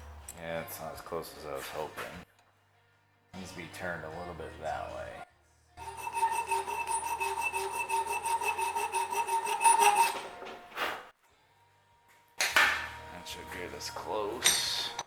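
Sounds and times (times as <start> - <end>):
hand file rasping on metal: 5.8 - 10.4.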